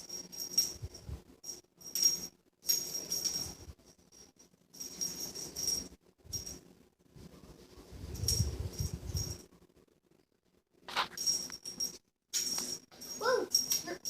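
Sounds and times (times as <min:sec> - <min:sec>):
cat toy bell jingling: 0:00.0 - 0:06.6, 0:08.1 - 0:09.4, 0:11.1 - 0:14.0.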